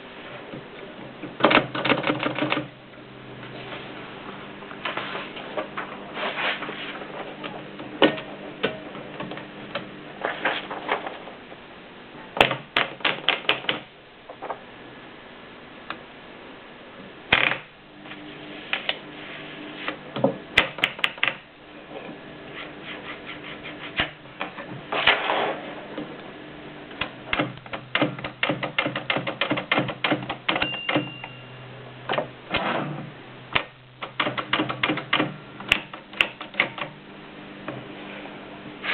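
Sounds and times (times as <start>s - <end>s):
typewriter keys clacking: 27.4s - 31.1s
short ringing tone: 30.6s - 31.7s.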